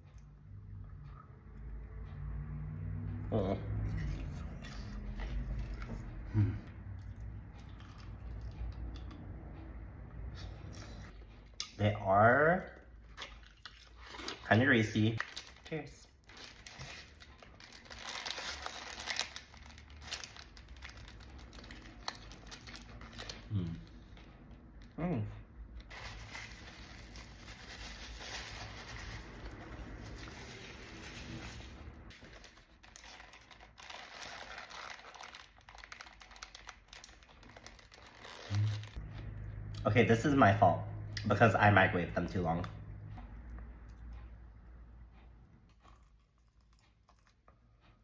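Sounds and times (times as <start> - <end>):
fried food crunching while chewed: 13.0 - 15.6, 16.2 - 23.9, 45.7 - 47.7
wet chewing clicks: 45.6 - 47.7.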